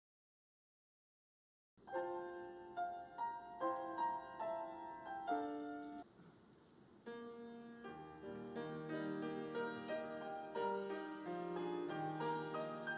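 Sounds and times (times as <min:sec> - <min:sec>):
piano chords and melody: 0:01.8 - 0:06.1, 0:07.0 - 0:12.9.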